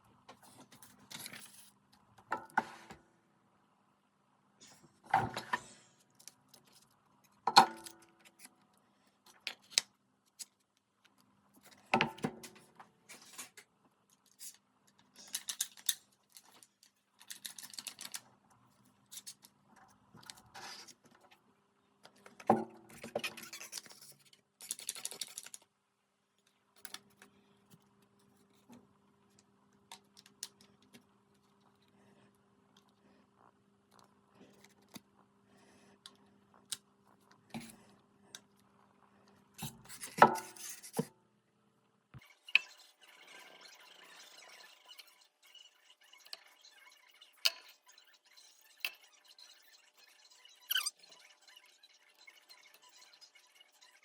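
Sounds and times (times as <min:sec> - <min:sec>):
wooden pieces clicking and knocking: 0:15.2 - 0:18.2, 0:24.6 - 0:25.7.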